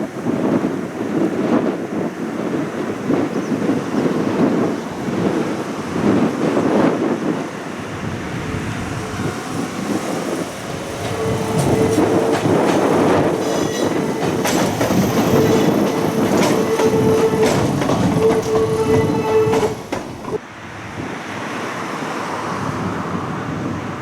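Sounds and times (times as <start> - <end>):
train wheels rumbling on rail: 0.0 - 24.0
wheels clicking over rail joints: 9.2 - 20.4.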